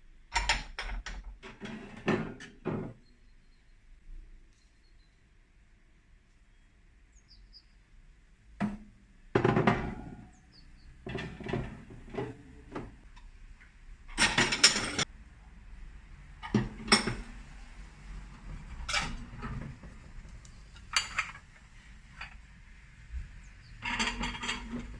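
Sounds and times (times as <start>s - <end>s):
dishes and utensils clinking: 9.4s - 10.4s, 11.0s - 12.9s, 14.2s - 15.1s, 20.8s - 21.4s, 23.8s - 24.9s.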